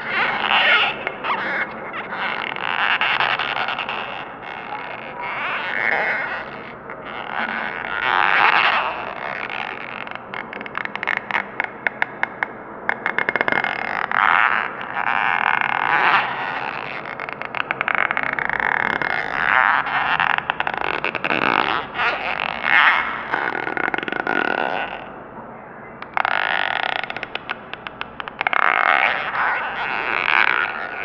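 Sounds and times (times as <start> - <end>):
fast stuttering chatter: 0.0 - 11.5.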